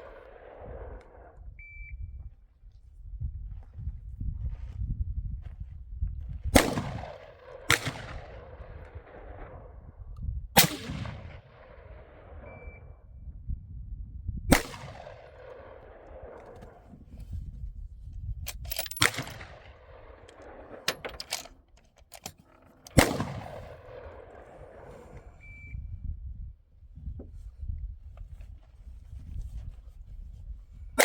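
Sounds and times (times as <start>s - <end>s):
gunshots with echo: 6.6s - 9.6s, 10.6s - 12.5s, 22.9s - 25.3s.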